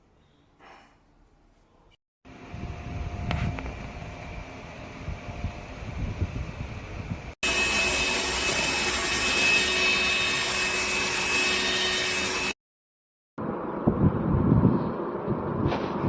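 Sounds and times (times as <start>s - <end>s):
vacuum cleaner motor running: 7.4s - 12.6s.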